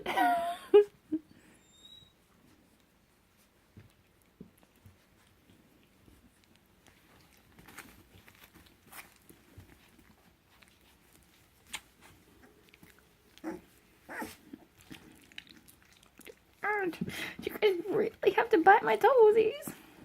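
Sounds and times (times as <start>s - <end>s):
puppies scuffling: 2.2s - 20.0s
puppy yips: 13.4s - 14.4s.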